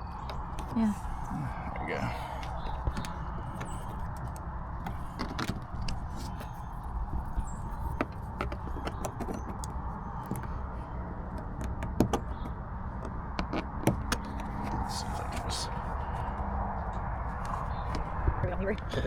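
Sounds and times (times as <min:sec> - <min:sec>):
plastic trim clicking and rattling: 0:00.1 - 0:16.4.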